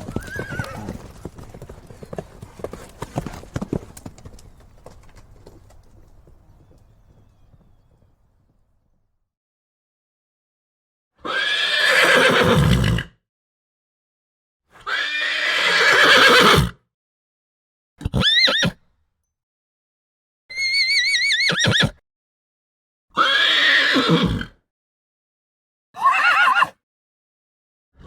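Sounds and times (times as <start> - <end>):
horse neighing and whinnying: 0.0 - 3.9, 11.2 - 13.0, 14.8 - 16.7, 18.0 - 18.8, 20.5 - 22.0, 23.2 - 24.6, 26.0 - 26.8.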